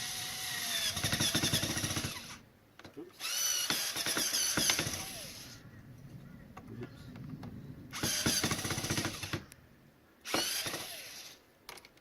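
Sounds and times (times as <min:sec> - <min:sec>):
power drill motor whining: 0:03.2 - 0:05.6, 0:10.3 - 0:11.4.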